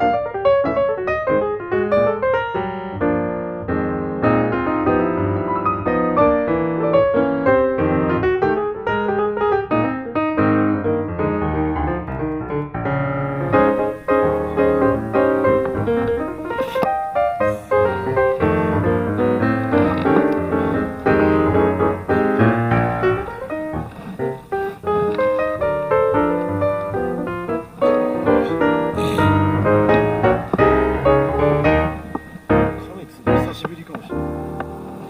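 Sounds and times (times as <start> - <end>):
lively piano music: 0.0 - 35.0.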